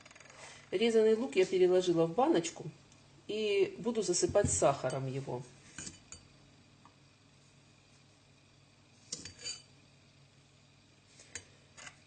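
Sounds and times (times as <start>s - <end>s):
spoon scrape: 9.1s - 9.7s.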